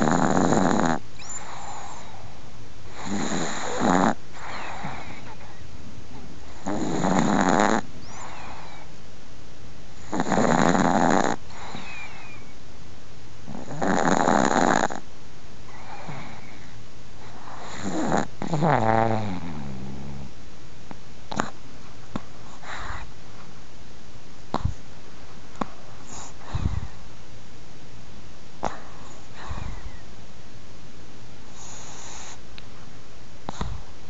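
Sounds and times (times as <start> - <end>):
dog snoring: 0.0 - 2.3, 2.9 - 5.6, 6.4 - 8.9, 10.0 - 12.5, 13.5 - 15.0, 15.7 - 20.3, 21.3 - 23.1, 24.5 - 24.8, 25.6 - 27.0, 28.6 - 30.0, 31.5 - 32.4, 33.5 - 33.8.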